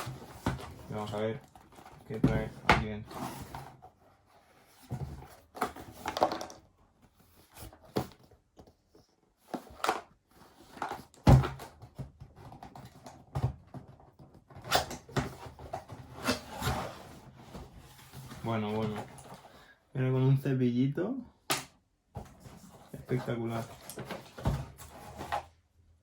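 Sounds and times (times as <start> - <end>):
box scraping and knocks: 0.0 - 6.5, 10.6 - 19.5, 22.2 - 25.5.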